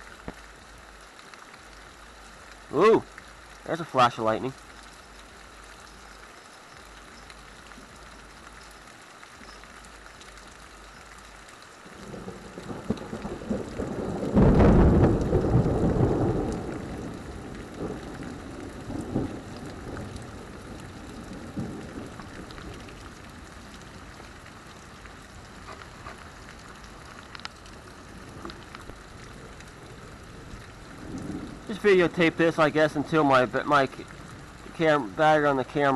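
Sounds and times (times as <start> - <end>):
heavy rain pouring: 0.0 - 35.9
thunder rumbling: 11.9 - 35.9.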